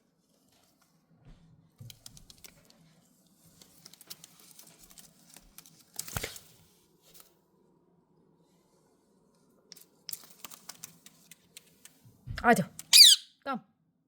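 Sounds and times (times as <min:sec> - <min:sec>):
parrot clicking and scratching toys: 0:01.9 - 0:02.7, 0:03.5 - 0:06.4, 0:09.7 - 0:12.0.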